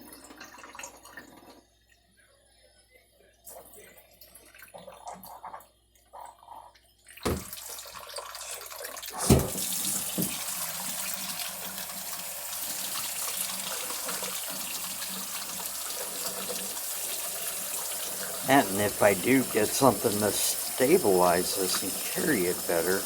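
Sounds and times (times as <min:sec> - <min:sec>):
running water rushing: 0:09.2 - 0:23.0.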